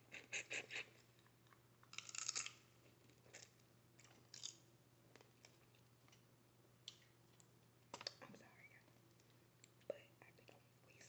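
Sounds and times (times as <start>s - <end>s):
crab shell cracking: 1.8s - 2.6s, 3.3s - 4.6s.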